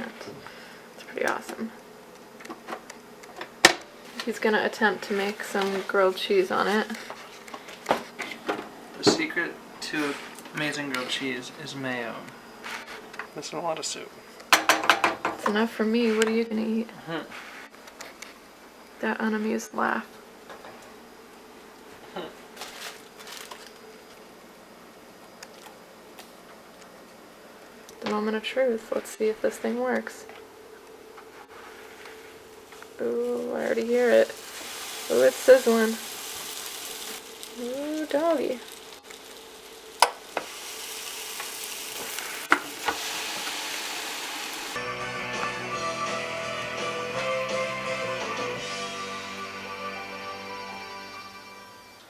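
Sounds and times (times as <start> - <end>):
low electrical hum: 0.0 - 44.8
sandwich sizzling: 21.0 - 24.2, 29.9 - 52.0
guitar music: 44.7 - 52.0.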